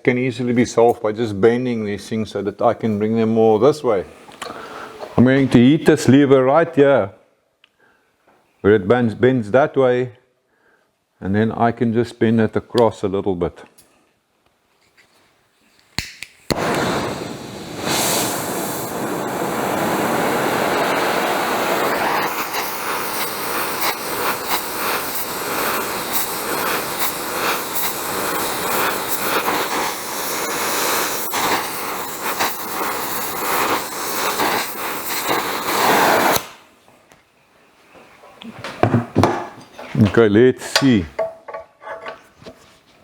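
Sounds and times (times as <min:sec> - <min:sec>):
gas torch hissing: 0:15.8 - 0:36.7
gas torch ignition click: 0:16.0 - 0:36.6.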